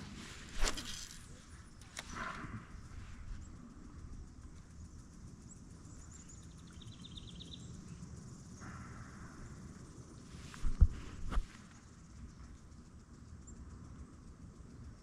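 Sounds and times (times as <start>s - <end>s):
wind rumble on microphone: 8.2s - 12.8s.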